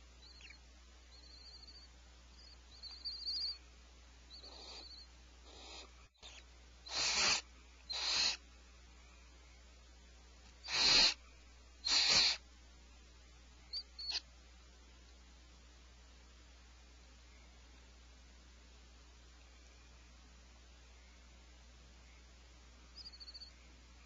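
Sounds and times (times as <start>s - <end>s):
owls twittering calls: 0.2s - 3.6s, 4.3s - 8.4s, 10.6s - 11.2s, 11.8s - 12.4s, 13.7s - 14.2s, 23.0s - 23.5s
owl hissing screeches: 2.4s - 3.6s, 4.3s - 8.4s, 10.6s - 11.2s, 11.8s - 12.4s, 13.7s - 14.2s.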